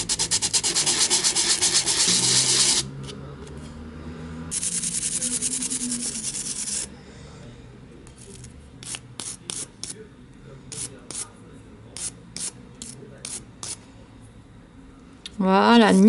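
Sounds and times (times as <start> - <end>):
hand sanding scratching: 0.0 - 2.9, 4.5 - 6.9.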